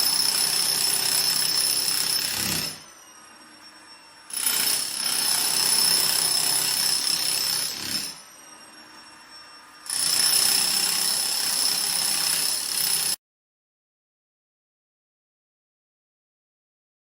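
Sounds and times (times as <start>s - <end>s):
jackhammer breaking tiles: 0.0s - 2.8s, 4.3s - 8.2s, 9.9s - 13.2s.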